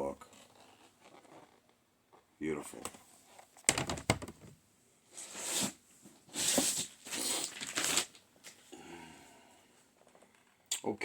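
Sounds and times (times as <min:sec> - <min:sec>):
plastic scraping and rustling: 0:00.2 - 0:04.6, 0:05.2 - 0:08.6.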